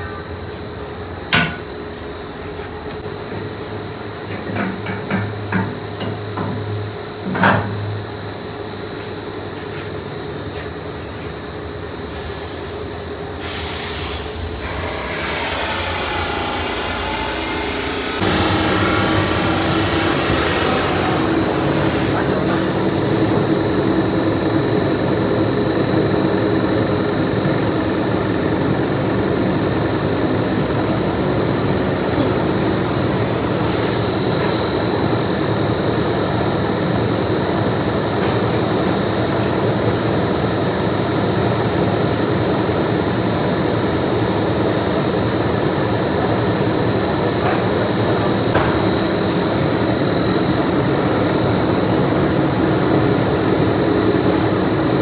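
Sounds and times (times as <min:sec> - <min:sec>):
factory machinery whining: 0:11.9 - 0:55.0.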